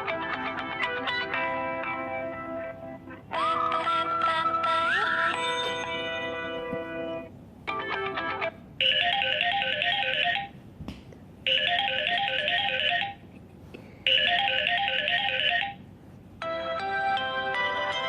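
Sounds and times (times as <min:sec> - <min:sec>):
phone ringtone: 0:08.8 - 0:10.6, 0:11.5 - 0:13.3, 0:14.1 - 0:15.8.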